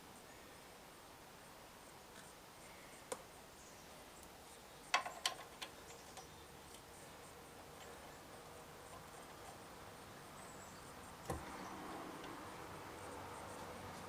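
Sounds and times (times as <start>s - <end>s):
low background noise: 0.0s - 14.0s.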